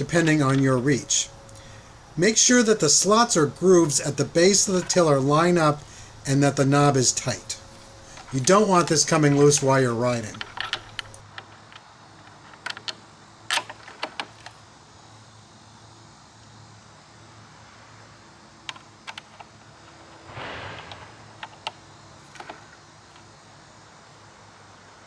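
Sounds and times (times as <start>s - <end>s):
scooter parts clicking: 3.9s - 14.6s.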